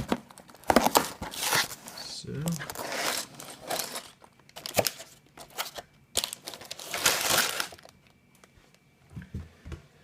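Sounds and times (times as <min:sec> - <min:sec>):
plastic bags crinkling: 0:00.3 - 0:08.2.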